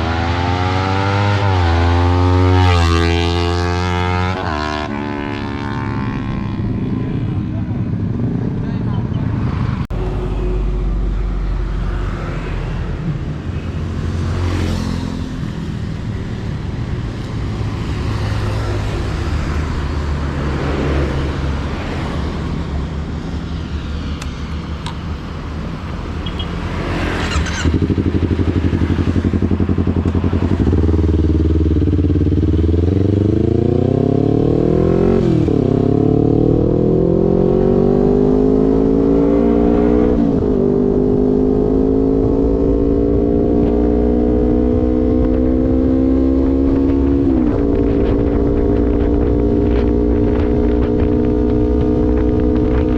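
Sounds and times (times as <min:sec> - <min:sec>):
motorcycle engine accelerating: 0:00.0 - 0:09.8, 0:26.3 - 0:52.9.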